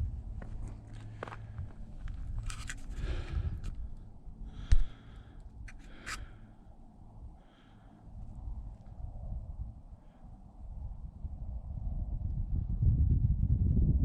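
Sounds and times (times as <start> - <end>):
low wind rumble: 0.0 - 14.0.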